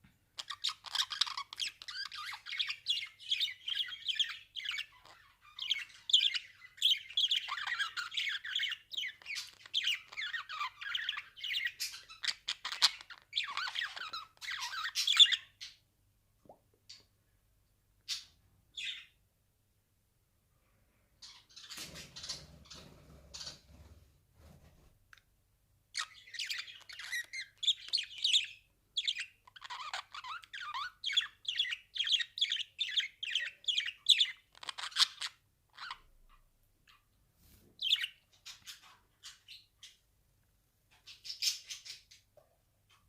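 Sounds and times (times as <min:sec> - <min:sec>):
budgerigar chirping and chattering: 0:00.4 - 0:15.8, 0:18.1 - 0:19.2, 0:21.2 - 0:23.6, 0:26.0 - 0:37.0, 0:37.8 - 0:40.0, 0:41.0 - 0:42.2.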